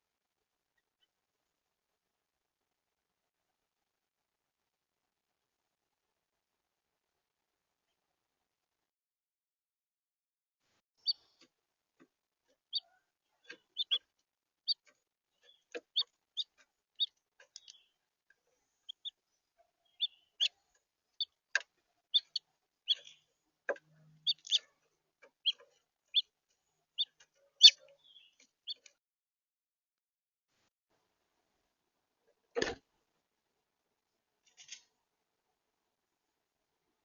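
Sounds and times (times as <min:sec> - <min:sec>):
finches chirping: 0:12.7 - 0:14.1, 0:14.7 - 0:18.0, 0:18.8 - 0:28.9.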